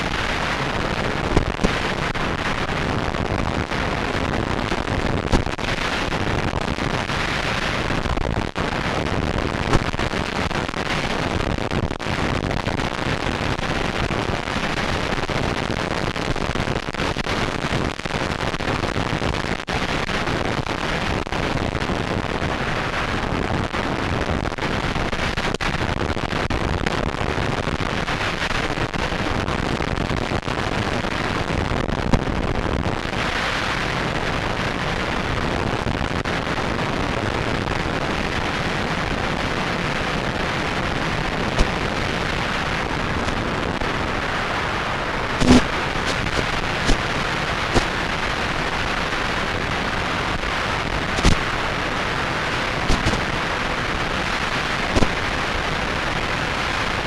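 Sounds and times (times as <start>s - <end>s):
short pops: 1.3s - 1.9s, 45.4s - 47.1s, 47.7s - 48.0s, 51.2s - 51.5s, 52.9s - 53.3s, 54.9s - 55.2s.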